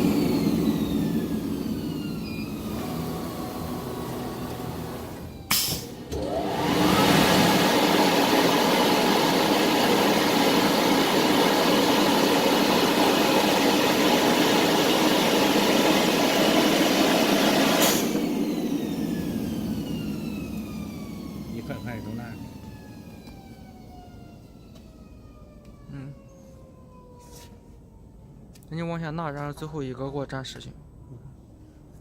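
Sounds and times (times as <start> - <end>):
motor whine and rushing run: 0.0 - 5.4, 6.0 - 25.1.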